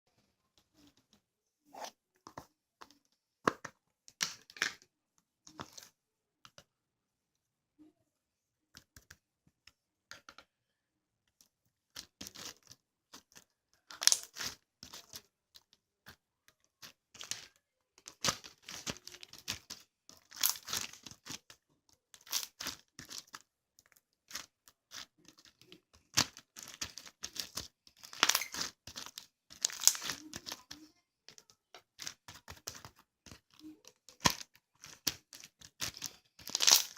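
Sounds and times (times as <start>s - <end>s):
crinkling and tearing rustles: 31.4s - 36.9s.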